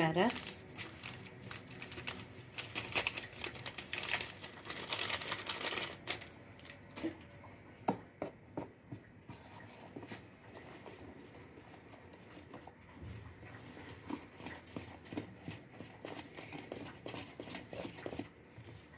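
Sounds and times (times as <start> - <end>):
paper sachets crackling and rustling: 0.0 - 7.2.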